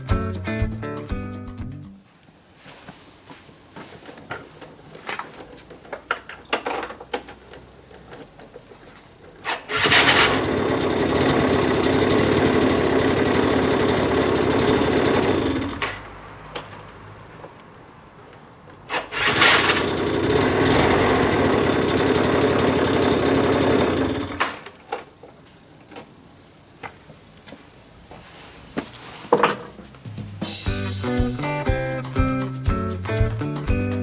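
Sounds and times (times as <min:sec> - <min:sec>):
scooter starter grinding whir: 0:04.6 - 0:17.5, 0:18.7 - 0:25.2.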